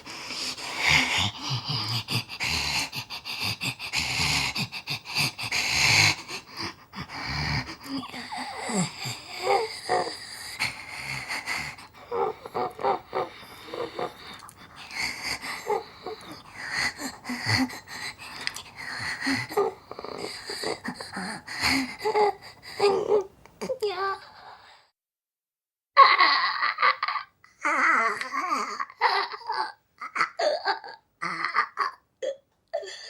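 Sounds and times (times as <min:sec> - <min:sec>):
raspy wheezing breaths: 0:00.0 - 0:23.3.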